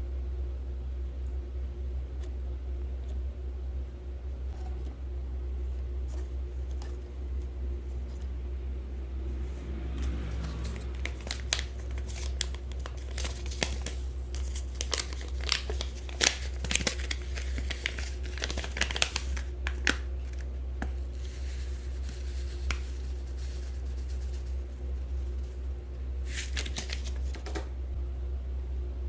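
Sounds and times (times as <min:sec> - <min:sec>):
steady low hum: 0:00.0 - 0:29.0
crinkling with sharp clicks: 0:10.6 - 0:21.0.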